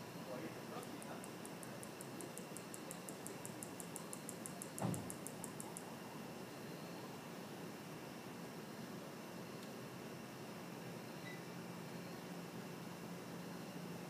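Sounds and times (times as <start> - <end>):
katydid ticking call: 0.8 - 5.9
low thump: 4.8 - 5.1.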